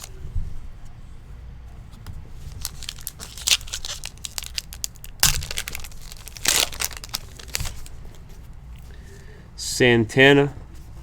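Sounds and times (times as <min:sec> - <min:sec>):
wrapper crinkling and tearing: 0:02.5 - 0:08.2.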